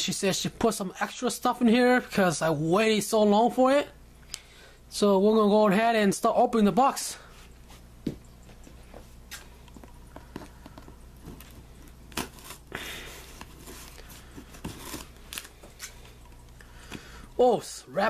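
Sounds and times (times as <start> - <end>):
scraping rustle: 11.2 - 16.1.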